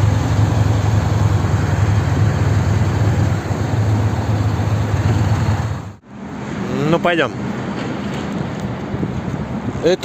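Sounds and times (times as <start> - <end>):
motorcycle engine drone: 0.0 - 7.0
wind and road noise: 0.0 - 10.0.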